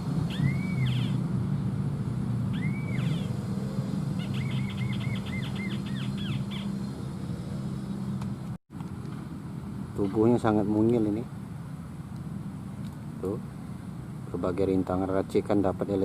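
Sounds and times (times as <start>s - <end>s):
bird whistling call: 0.3s - 1.2s, 2.5s - 3.4s, 4.2s - 6.8s.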